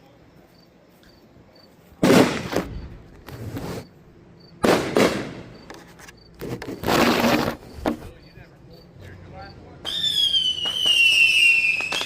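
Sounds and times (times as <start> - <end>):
fireworks bangs: 2.0 - 3.9, 4.6 - 5.7, 9.9 - 12.0.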